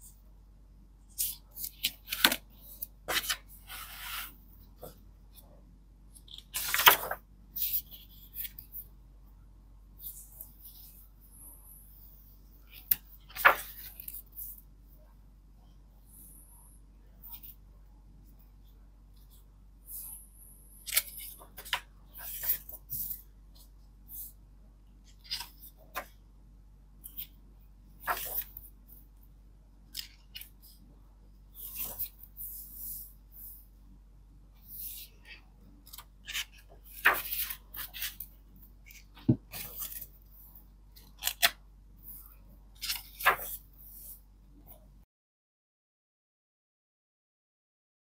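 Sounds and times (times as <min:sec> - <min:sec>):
book pages turning: 0:01.2 - 0:05.0, 0:06.2 - 0:08.8, 0:12.7 - 0:14.6, 0:20.8 - 0:23.2, 0:25.1 - 0:26.2, 0:28.0 - 0:28.8, 0:29.9 - 0:30.8, 0:31.6 - 0:33.1, 0:34.6 - 0:38.3, 0:38.9 - 0:40.2, 0:41.0 - 0:41.6, 0:42.8 - 0:43.7
paper and card rustling: 0:01.2 - 0:05.0, 0:06.2 - 0:08.9, 0:12.7 - 0:14.6, 0:20.9 - 0:23.2, 0:25.1 - 0:26.1, 0:28.0 - 0:28.8, 0:31.6 - 0:33.6, 0:34.6 - 0:40.2, 0:42.8 - 0:44.2.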